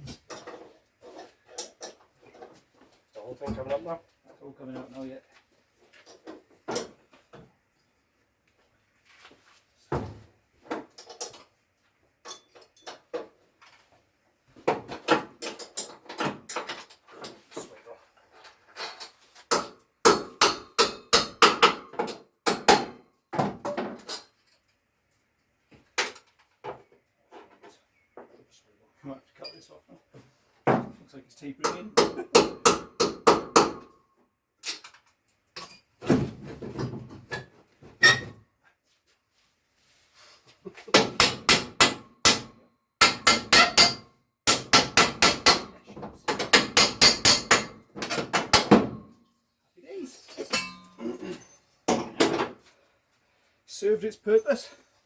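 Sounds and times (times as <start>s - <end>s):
hammer striking metal: 41.2s - 45.7s, 46.5s - 47.8s.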